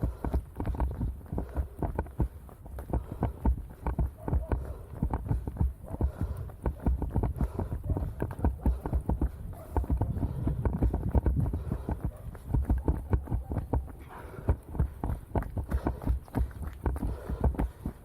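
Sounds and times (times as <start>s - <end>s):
running footsteps on snow: 0.0s - 18.0s.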